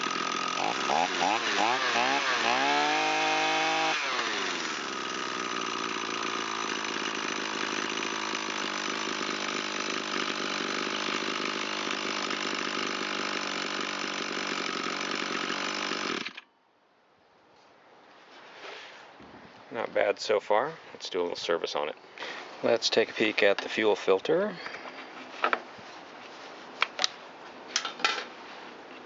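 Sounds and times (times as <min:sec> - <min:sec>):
string trimmer engine idling: 0:00.0 - 0:16.5.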